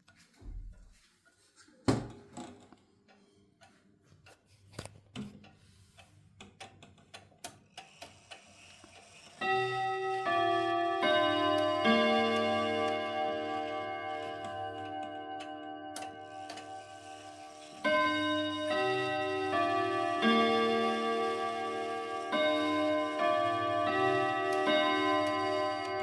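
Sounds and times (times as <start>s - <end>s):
clock clicks and knocks: 6.4s - 26.0s
chime clock melody: 9.2s - 26.0s.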